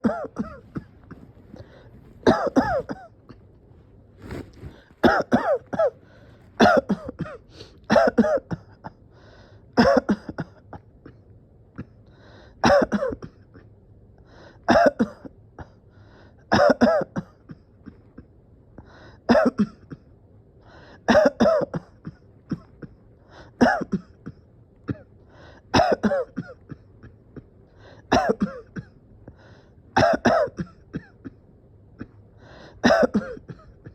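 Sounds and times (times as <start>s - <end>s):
person coughing: 0.0s - 3.4s, 4.2s - 9.1s, 9.8s - 11.2s, 12.6s - 13.6s, 14.7s - 15.8s, 16.5s - 18.3s, 19.3s - 20.1s, 21.1s - 29.0s, 30.0s - 31.4s, 32.0s - 33.9s.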